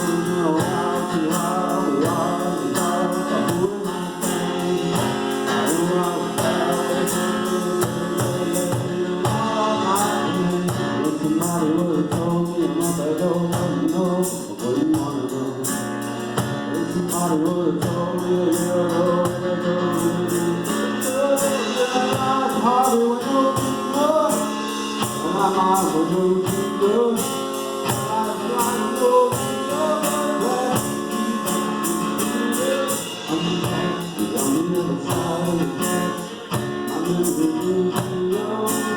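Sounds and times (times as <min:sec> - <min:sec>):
person singing: 0:00.0 - 0:16.0, 0:16.6 - 0:38.9
acoustic instruments playing: 0:00.0 - 0:38.9
steady percussion beat: 0:00.0 - 0:38.9.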